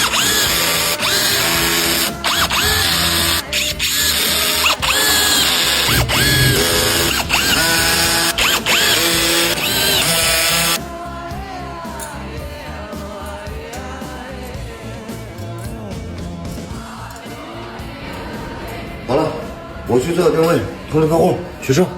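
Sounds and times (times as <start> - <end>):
power tool motor whining: 0.0 - 10.8
background music: 0.0 - 21.9.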